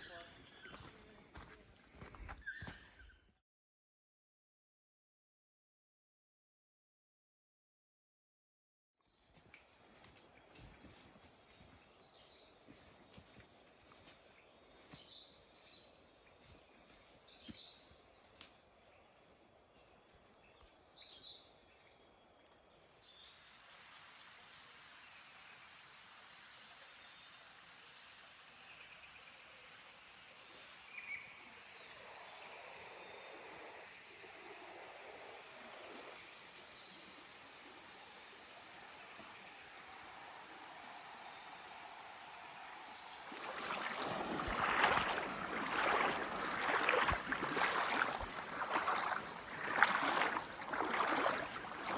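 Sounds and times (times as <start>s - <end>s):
high insect drone: 0.0s - 3.0s, 9.3s - 51.9s
wide hiss: 22.9s - 51.9s.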